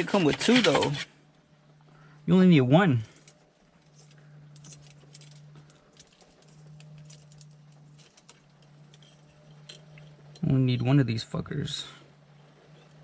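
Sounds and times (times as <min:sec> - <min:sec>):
low steady hum: 0:00.0 - 0:13.0
small metal hardware clinking: 0:03.1 - 0:10.9.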